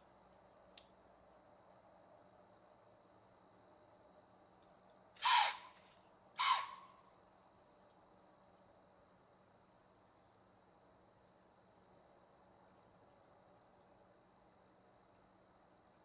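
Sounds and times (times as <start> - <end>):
insect trilling: 5.2 - 5.8, 6.4 - 6.9.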